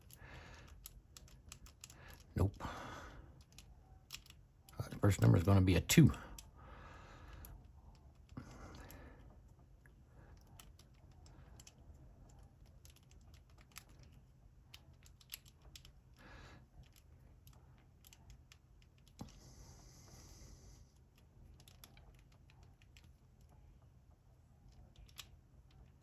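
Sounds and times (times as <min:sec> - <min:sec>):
padlock wheels clicking: 0:00.0 - 0:02.3.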